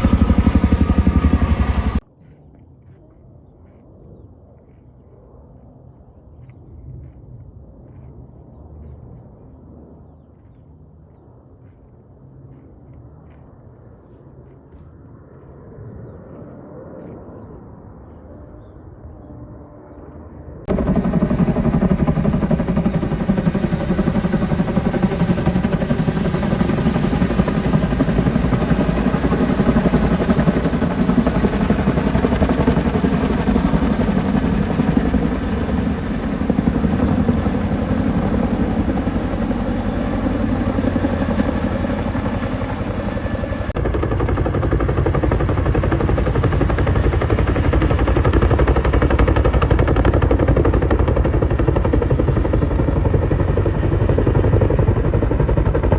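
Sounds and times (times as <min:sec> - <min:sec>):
loud engine droning and rattling: 0:00.0 - 0:02.0.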